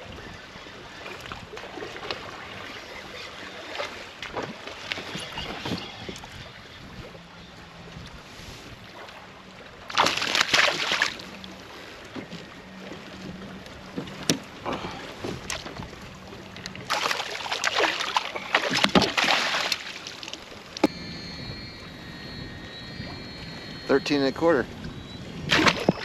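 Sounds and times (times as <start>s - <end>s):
water splashing at a kayak: 0.0s - 26.0s.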